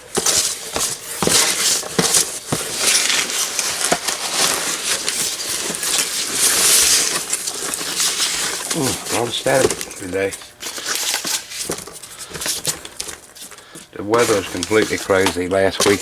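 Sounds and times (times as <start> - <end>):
plastic packing material crinkling: 0.0 - 16.0
static crackles: 3.8 - 11.6.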